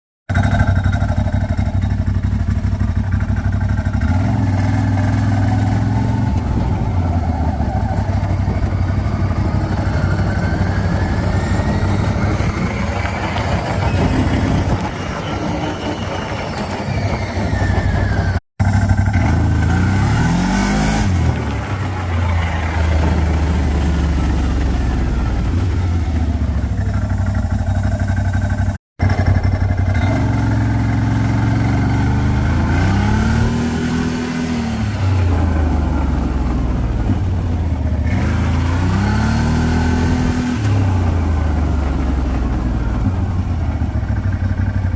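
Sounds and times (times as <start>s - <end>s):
atv engine revving: 0.3s - 44.9s
grinding on engine braking: 2.6s - 28.1s.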